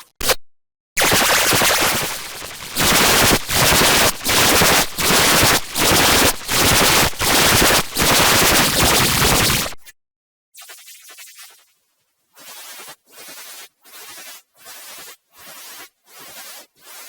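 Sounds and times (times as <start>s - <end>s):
harsh electronic crackling noise: 1.0s - 9.9s.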